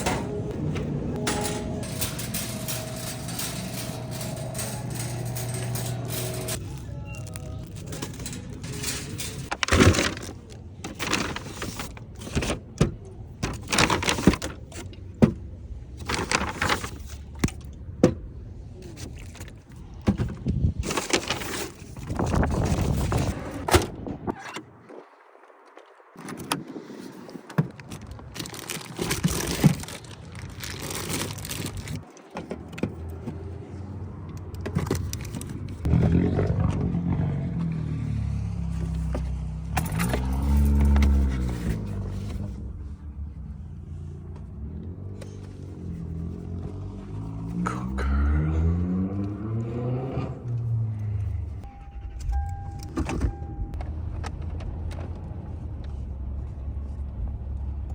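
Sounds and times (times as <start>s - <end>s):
vehicle engine running: 0.0s - 14.4s
knocks and scrapes of handling: 0.0s - 15.4s, 16.0s - 18.2s, 38.5s - 42.6s.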